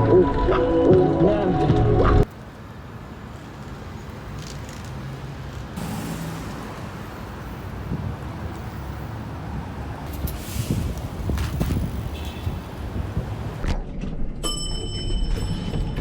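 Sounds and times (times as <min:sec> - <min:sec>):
road traffic rumble: 0:02.2 - 0:13.7.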